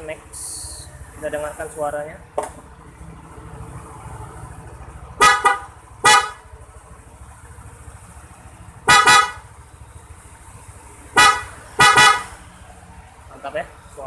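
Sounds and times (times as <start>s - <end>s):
scooter horn blasts: 5.2s - 6.4s, 8.9s - 9.5s, 11.2s - 12.4s.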